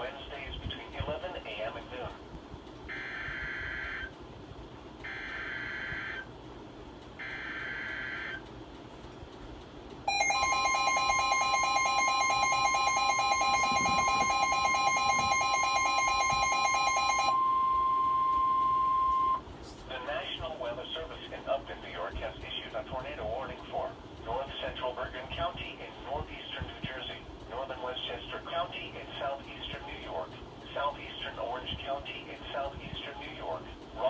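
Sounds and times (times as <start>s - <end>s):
steady pure tone: 10.0s - 22.0s
harsh pulsing attention signal: 10.1s - 19.4s.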